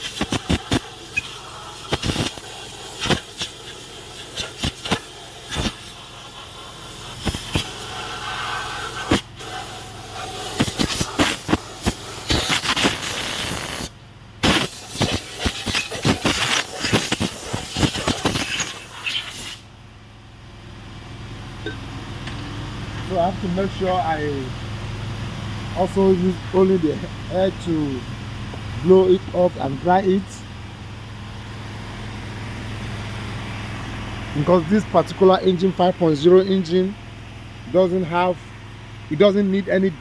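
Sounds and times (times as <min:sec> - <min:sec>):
hissing spray on metal: 0:00.0 - 0:19.7.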